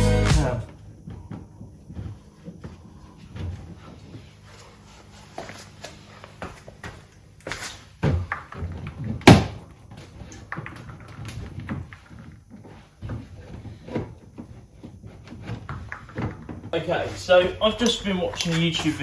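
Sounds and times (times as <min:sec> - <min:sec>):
plastic trim knocks and clunks: 0:08.0 - 0:16.8.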